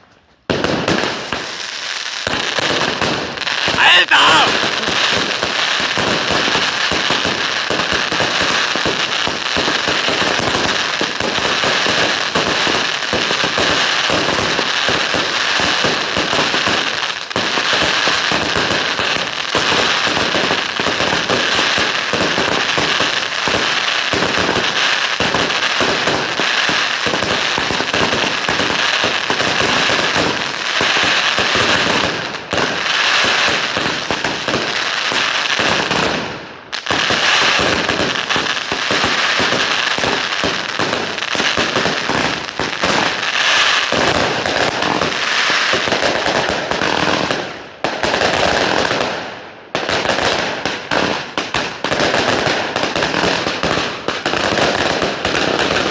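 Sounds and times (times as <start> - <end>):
fireworks crackling and banging: 0.0 - 55.9.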